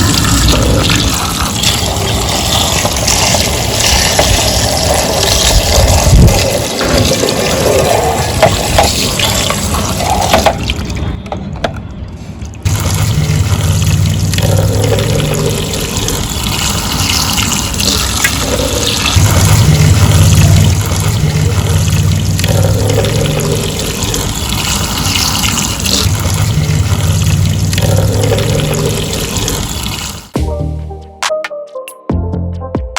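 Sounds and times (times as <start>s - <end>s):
running water splashing: 0.0s - 11.1s, 12.6s - 30.4s
low hum: 12.4s - 29.6s.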